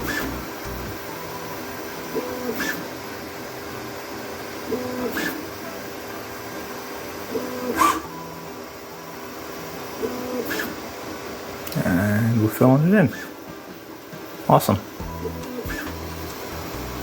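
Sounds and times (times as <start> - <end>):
steady printer hum: 0.0 - 17.0
stepper motor whine: 15.0 - 17.0.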